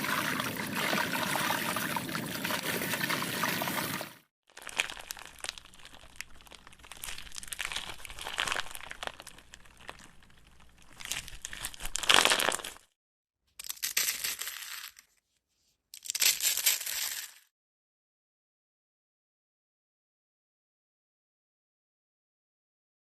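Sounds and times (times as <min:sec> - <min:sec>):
crackling crinkling stirring: 0:04.5 - 0:12.9.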